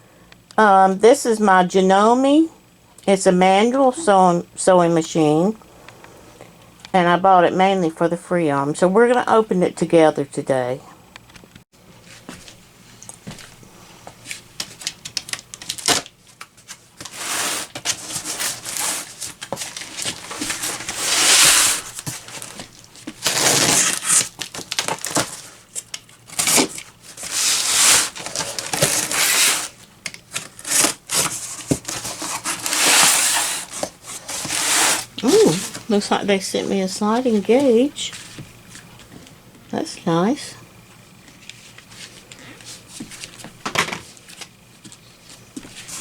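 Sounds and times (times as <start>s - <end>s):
cardboard packaging rustling and tearing: 14.3s - 35.8s.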